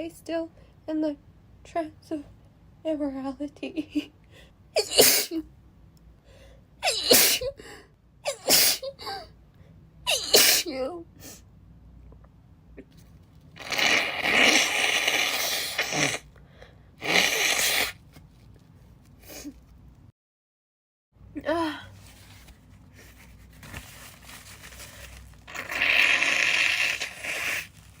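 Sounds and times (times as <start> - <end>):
woman sneezing: 4.8 - 5.4, 6.8 - 7.6, 8.3 - 9.2, 10.1 - 10.8.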